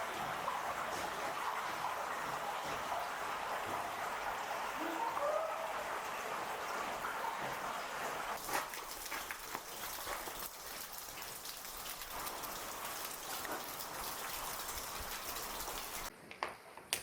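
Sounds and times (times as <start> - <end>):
water dripping and trickling: 0.0 - 16.1.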